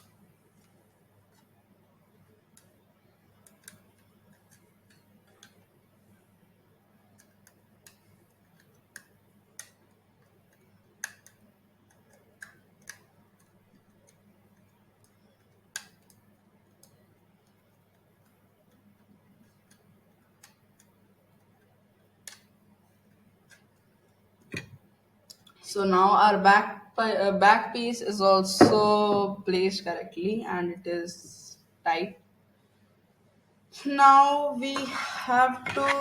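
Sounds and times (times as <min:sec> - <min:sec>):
light clicks and taps of parts: 0:03.4 - 0:05.7, 0:07.2 - 0:21.0.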